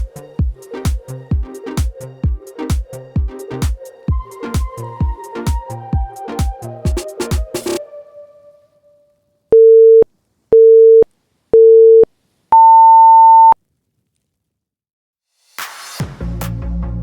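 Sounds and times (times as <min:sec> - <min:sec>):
electronic dance music: 0:00.0 - 0:07.8.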